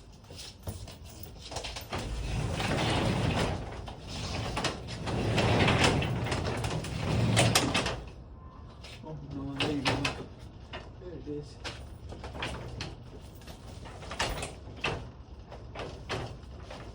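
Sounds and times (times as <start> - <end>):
rattles and sharp clicks: 0.3 - 8.2, 11.6 - 16.9
garage door rumbling hum: 1.3 - 16.9.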